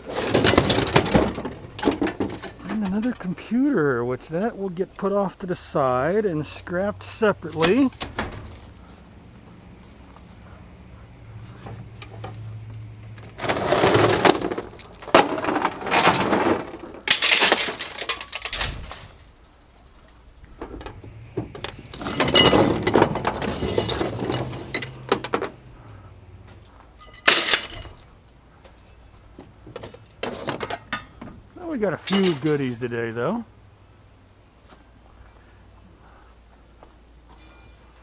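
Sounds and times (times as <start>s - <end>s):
scrap metal crashing onto pile: 0.0s - 3.3s, 13.4s - 19.3s, 21.9s - 25.5s, 27.0s - 28.0s, 31.9s - 32.8s.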